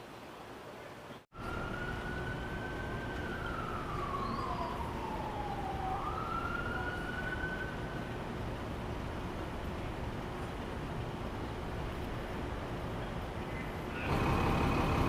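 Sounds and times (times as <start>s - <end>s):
emergency vehicle siren wailing: 1.4s - 8.3s.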